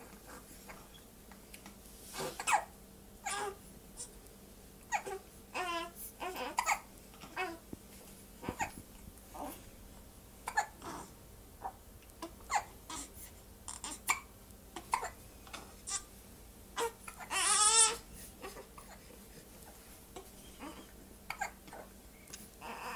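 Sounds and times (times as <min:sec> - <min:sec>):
hiccups: 0:02.3 - 0:02.7, 0:10.5 - 0:11.1, 0:20.5 - 0:21.8
high-pitched squeaks and fussing: 0:16.8 - 0:19.0, 0:19.6 - 0:21.9
whimpering cry: 0:20.2 - 0:21.9, 0:22.6 - 0:22.9.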